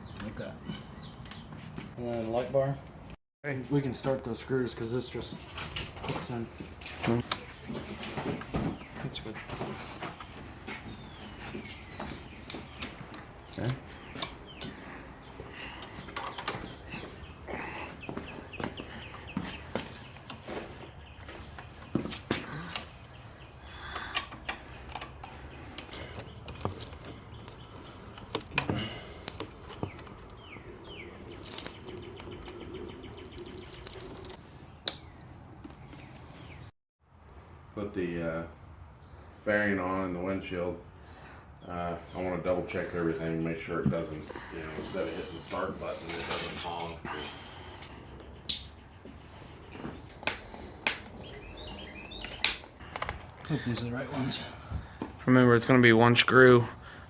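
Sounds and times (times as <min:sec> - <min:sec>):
tools and parts clicking: 0:24.0 - 0:30.4, 0:31.2 - 0:34.4.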